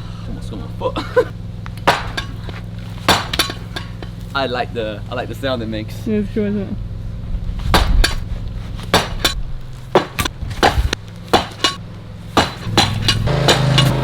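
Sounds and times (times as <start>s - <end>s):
sledgehammer striking brick: 1.8s - 4.3s, 7.7s - 11.8s, 12.4s - 14.0s.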